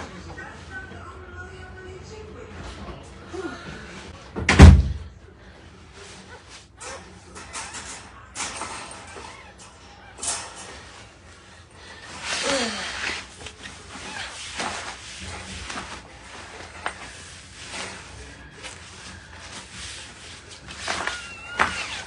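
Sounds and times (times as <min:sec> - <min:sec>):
rustling and handling noises: 0:05.4 - 0:22.0.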